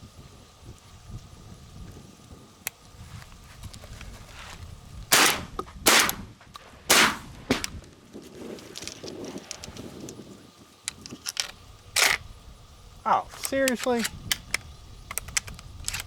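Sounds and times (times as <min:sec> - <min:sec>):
shotgun shots: 0:05.1 - 0:06.3, 0:06.9 - 0:07.6.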